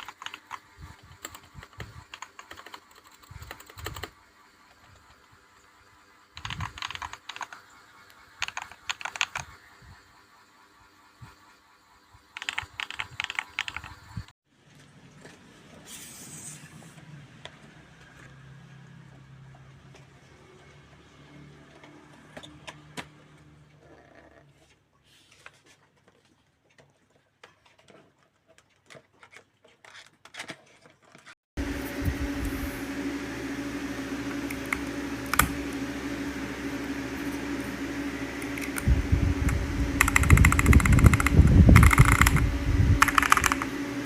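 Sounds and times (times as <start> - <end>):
rapid typing: 0.0 - 4.2, 6.4 - 7.7, 8.4 - 9.6, 12.3 - 14.1, 40.0 - 42.4, 43.0 - 43.7
steady hum: 31.6 - 44.0
keyboard key clicks: 40.0 - 42.4, 43.0 - 43.7.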